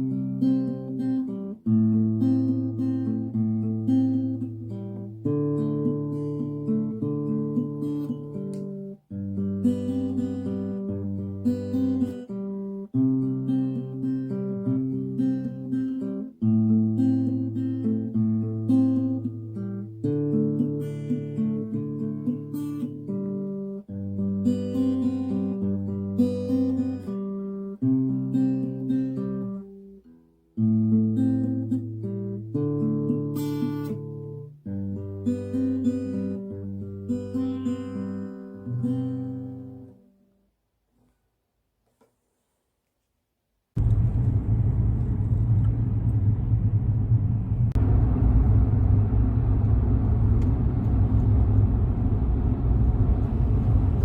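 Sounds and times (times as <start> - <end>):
acoustic guitar chords: 0.0 - 40.1.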